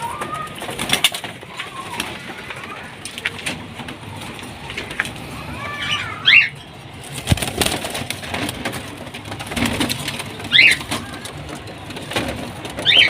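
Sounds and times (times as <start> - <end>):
clicks and rustling: 0.0 - 5.2, 6.8 - 13.0
cockatiels chirping: 5.8 - 6.6, 10.4 - 11.2, 12.8 - 13.0.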